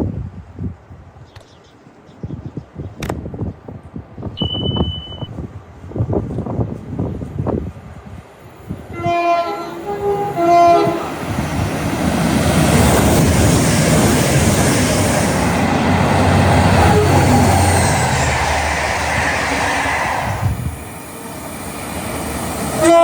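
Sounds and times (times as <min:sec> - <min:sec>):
train wheels rushing by: 0:05.9 - 0:23.0
two-tone train horn: 0:08.9 - 0:11.1, 0:16.8 - 0:17.4, 0:22.8 - 0:23.0.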